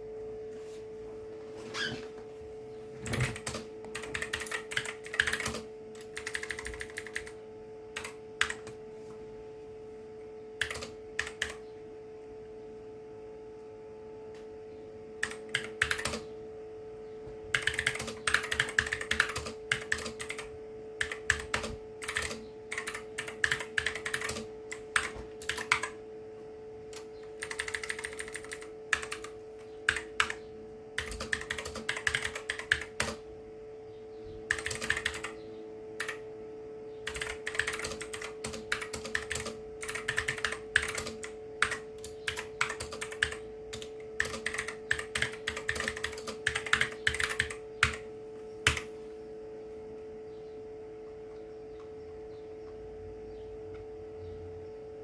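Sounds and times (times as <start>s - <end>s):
faint steady hum: 0.0s - 55.0s
clicky mechanical keyboard typing: 3.0s - 8.8s, 10.6s - 11.6s, 15.2s - 16.3s, 17.5s - 26.0s, 26.9s - 30.4s, 31.0s - 33.2s, 34.5s - 35.4s, 37.0s - 48.9s.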